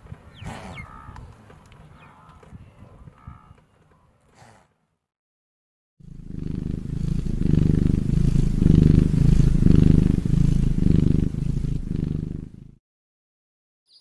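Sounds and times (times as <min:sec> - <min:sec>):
cat purring: 0:06.0 - 0:12.8.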